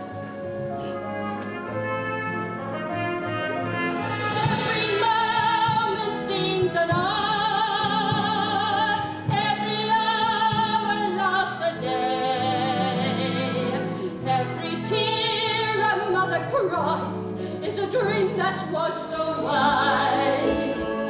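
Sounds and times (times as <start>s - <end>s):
instrumental accompaniment: 0.0s - 16.7s, 17.8s - 21.0s
woman singing operatic ballad: 4.7s - 21.0s.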